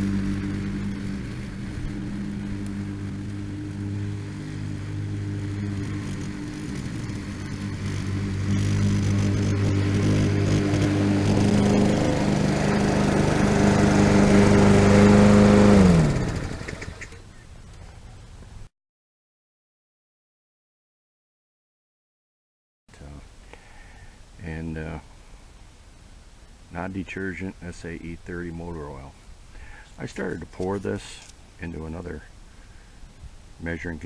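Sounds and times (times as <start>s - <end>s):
lawn mower engine running: 0.0s - 17.7s.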